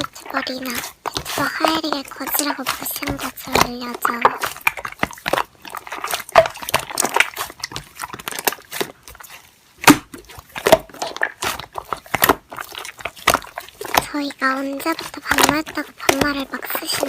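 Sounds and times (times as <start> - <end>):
slime being squeezed: 0.0 - 17.0.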